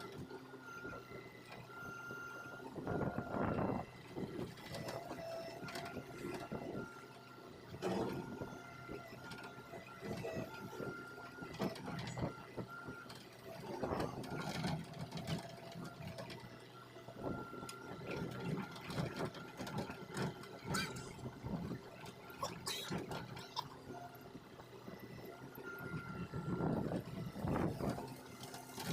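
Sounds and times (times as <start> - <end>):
excavator hydraulic whine: 20.2 - 28.9.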